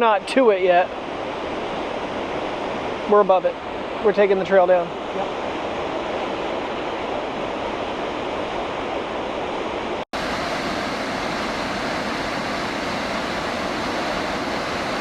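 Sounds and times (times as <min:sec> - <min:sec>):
waterfall rushing: 0:10.2 - 0:15.0.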